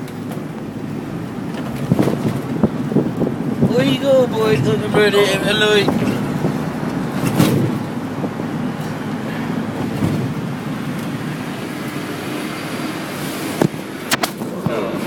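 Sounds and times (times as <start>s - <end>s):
car road and engine noise: 0.0s - 15.0s.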